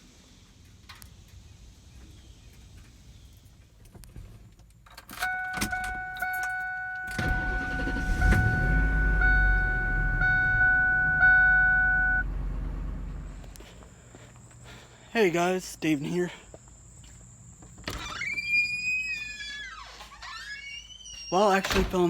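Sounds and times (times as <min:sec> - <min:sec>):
engine rumbling: 0:00.0 - 0:18.8
vehicle door and key clicks: 0:04.7 - 0:08.4
electronic warning chime: 0:05.2 - 0:12.3
engine cranking and starting: 0:07.1 - 0:10.6.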